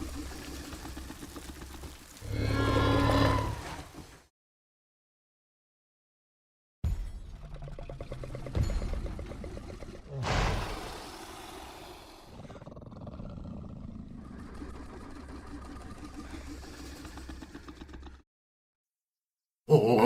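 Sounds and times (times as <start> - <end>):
creature rattling growl: 0.0 - 3.8, 7.6 - 18.3
low rumbling growl: 0.0 - 3.9, 7.5 - 18.2
creature roar: 2.2 - 3.9, 10.1 - 18.2, 19.7 - 20.0.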